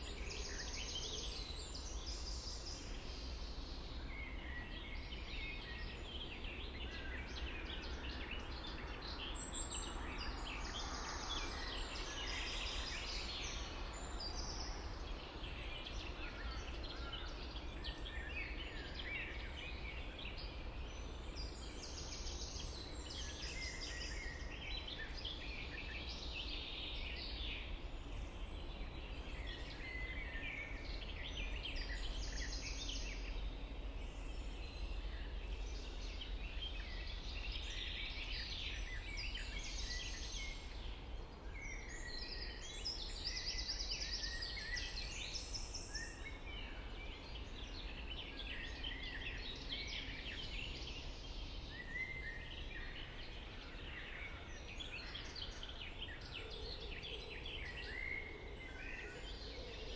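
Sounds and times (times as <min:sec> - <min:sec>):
songbirds singing: 0:00.0 - 0:59.9.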